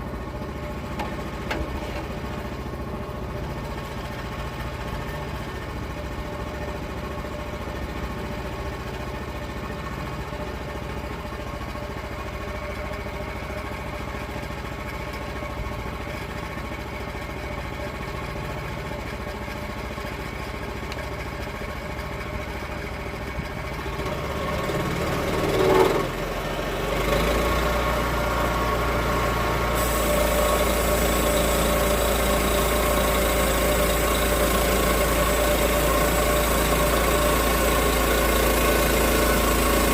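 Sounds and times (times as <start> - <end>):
sawmill engine running: 0.0 - 39.9
hiss: 29.6 - 39.9.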